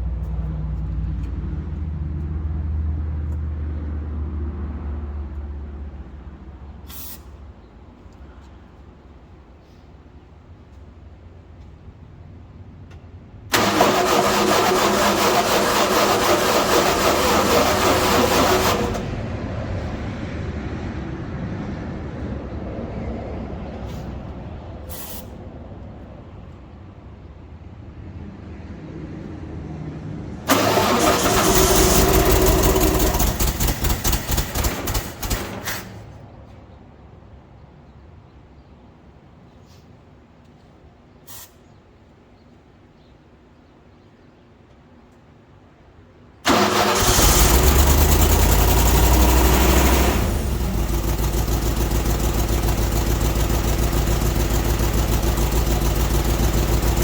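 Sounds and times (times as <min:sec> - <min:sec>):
engine cranking and running: 0:13.5 - 0:20.0, 0:30.5 - 0:36.2, 0:46.4 - 0:57.0.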